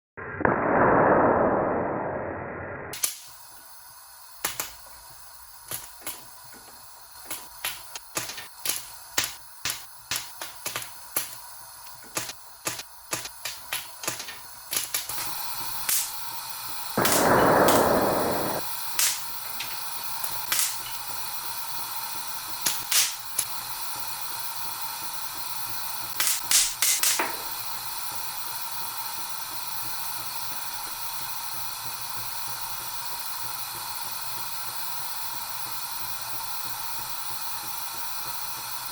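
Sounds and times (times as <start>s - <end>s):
oil popping and crackling: 3.0s - 28.2s
food sizzling in a pan: 3.0s - 38.9s.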